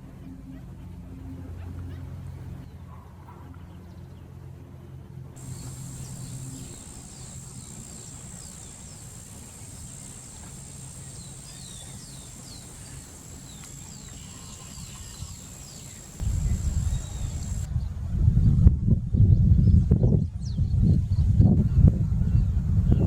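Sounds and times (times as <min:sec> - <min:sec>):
bird call notes: 0:05.4 - 0:17.7
high-pitched whine: 0:05.4 - 0:17.7
low rumble: 0:16.2 - 0:20.0.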